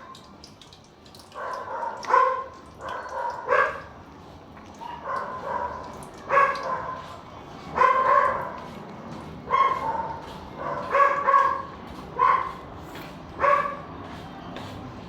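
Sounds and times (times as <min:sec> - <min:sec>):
dog barking: 0:01.3 - 0:03.9, 0:04.8 - 0:07.1, 0:07.8 - 0:08.7, 0:09.5 - 0:12.6, 0:13.4 - 0:13.8.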